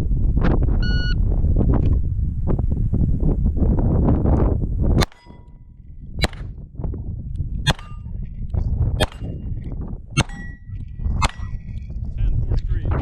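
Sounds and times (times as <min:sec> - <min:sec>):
pistol shots: 0:05.0 - 0:05.4, 0:06.2 - 0:06.6, 0:07.7 - 0:08.1, 0:09.0 - 0:09.4, 0:10.2 - 0:10.6, 0:11.2 - 0:11.6
steel plate target clanging: 0:05.0 - 0:05.6, 0:07.7 - 0:08.2, 0:09.0 - 0:09.4, 0:10.2 - 0:11.7.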